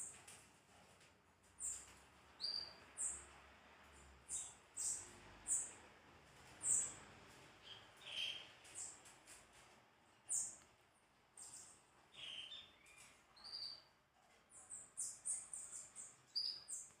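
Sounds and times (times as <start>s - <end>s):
small songbirds chirping: 1.6s - 3.3s, 3.9s - 5.9s, 6.5s - 9.1s, 10.2s - 10.6s, 11.3s - 17.0s.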